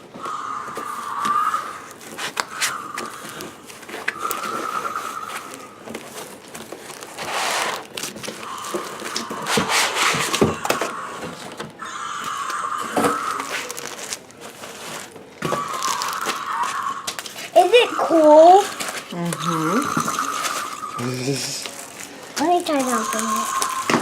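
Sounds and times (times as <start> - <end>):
cardboard box crinkling and scraping: 5.0 - 11.4, 13.0 - 16.2, 17.2 - 24.0.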